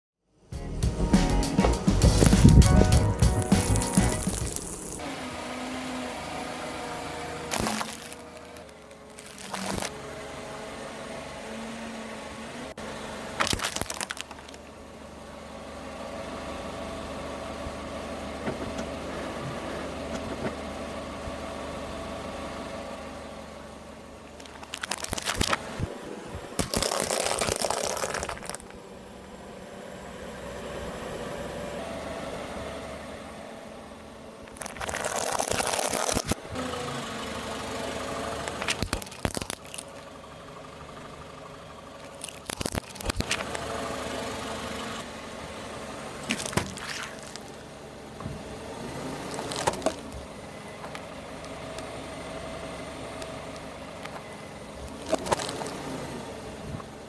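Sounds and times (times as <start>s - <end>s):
car engine running slowly: 0.4s - 26.5s, 28.0s - 35.4s, 36.3s - 57.0s
objects crunching under tyres: 7.1s - 10.1s, 13.4s - 14.7s, 24.4s - 28.8s, 34.4s - 36.6s, 38.4s - 40.1s, 42.0s - 43.7s, 46.2s - 48.3s, 49.1s - 52.0s, 53.1s - 56.0s.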